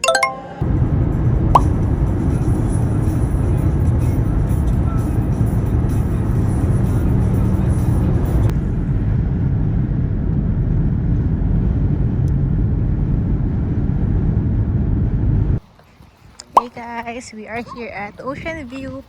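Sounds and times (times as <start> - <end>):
car interior road and engine noise: 0.6 - 15.6.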